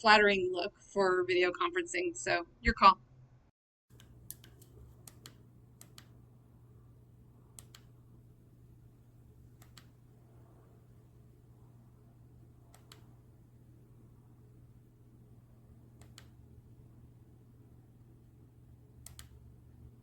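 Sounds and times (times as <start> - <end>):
faint clicks: 3.9 - 6.2, 7.6 - 7.9, 9.6 - 9.9, 12.7 - 13.1, 16.0 - 16.4, 19.0 - 19.4
steady low hum: 3.9 - 20.0.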